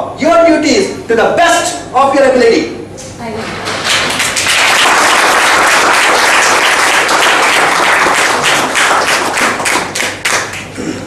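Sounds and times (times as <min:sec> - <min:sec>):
audience applauding: 0:03.7 - 0:10.7.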